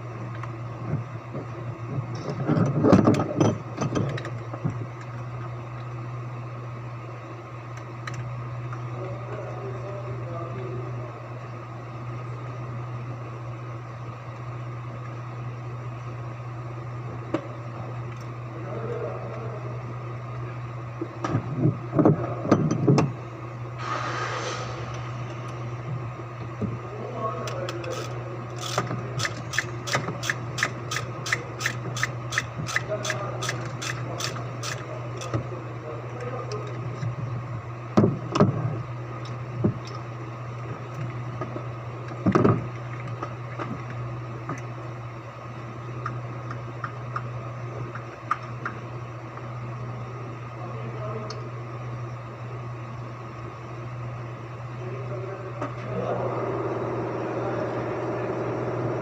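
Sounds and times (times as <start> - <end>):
engine starting and running: 23.8 - 26.5, 55.7 - 59.0
ratchet wrench clicking: 27.8 - 35.3.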